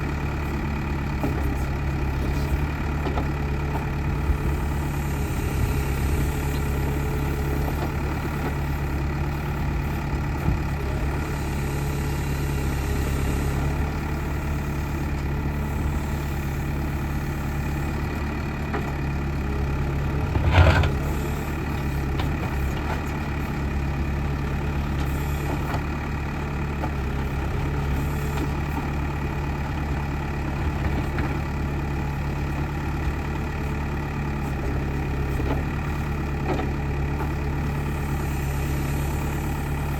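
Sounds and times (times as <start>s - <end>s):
diesel engine running steadily: 0.0s - 39.9s.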